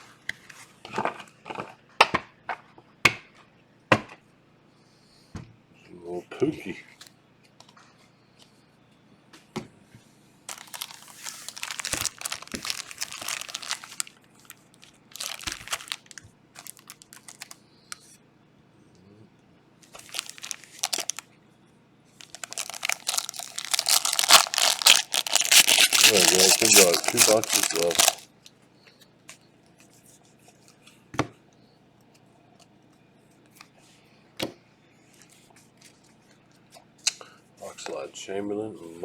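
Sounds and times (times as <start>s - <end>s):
plastic wrapping tearing and crinkling: 10.5s - 17.6s, 19.8s - 21.2s, 22.2s - 28.5s.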